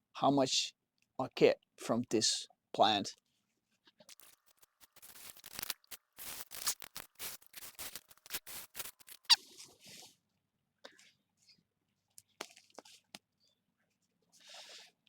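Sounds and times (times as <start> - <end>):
short high squeak: 6.6 - 9.5.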